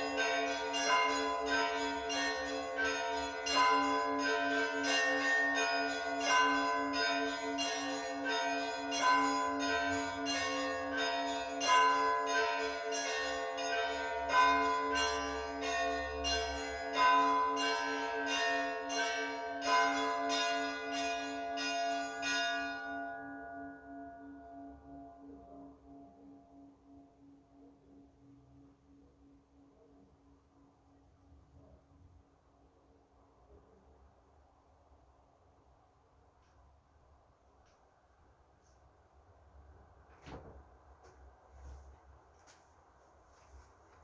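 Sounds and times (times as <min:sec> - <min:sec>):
bells ringing in a peal: 0:00.0 - 0:29.6
steady low ringing tone: 0:00.0 - 0:32.8.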